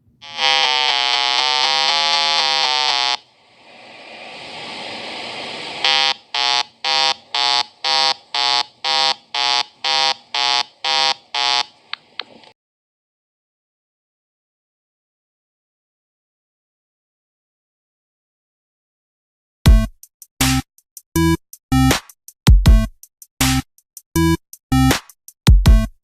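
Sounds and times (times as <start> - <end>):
electronic alarm buzzer: 0.2 - 3.3, 5.8 - 11.8
rising hiss: 0.4 - 8.9.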